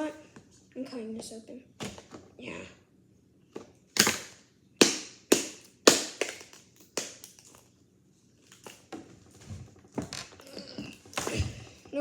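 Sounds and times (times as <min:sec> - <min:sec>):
scissors snipping packaging: 0:04.0 - 0:07.6.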